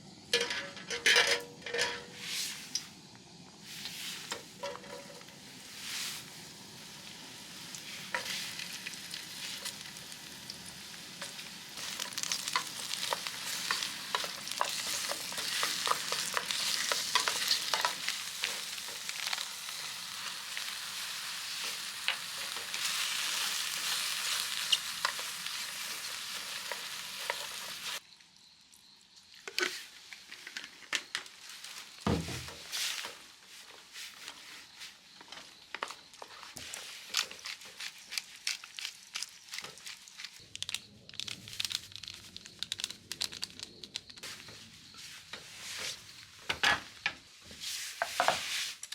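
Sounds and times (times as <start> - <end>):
food sizzling in a pan: 3.6 - 28.1, 31.6 - 33.4, 47.4 - 48.9.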